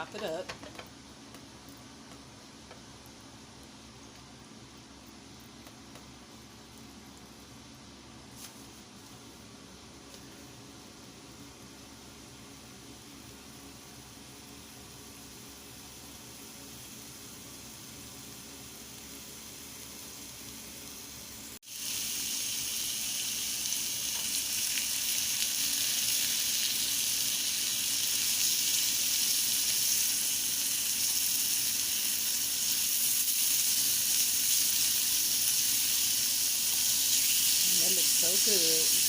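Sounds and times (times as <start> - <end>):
chicken sizzling in a pan: 11.4 - 39.0.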